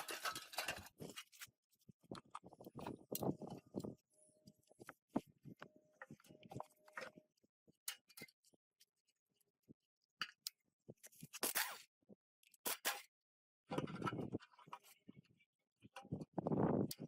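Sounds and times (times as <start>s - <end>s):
tools and metal parts clinking: 0.0s - 1.4s.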